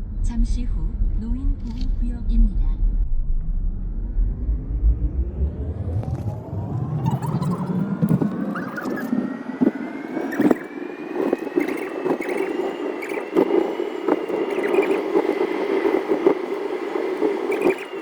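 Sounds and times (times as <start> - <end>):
road noise: 4.1 - 18.0
electric car motor whine: 5.3 - 18.0.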